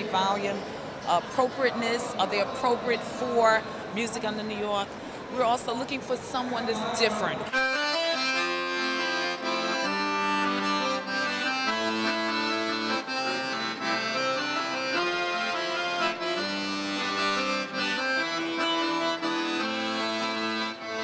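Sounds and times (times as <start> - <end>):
instrumental melody over chords: 7.5 - 21.0.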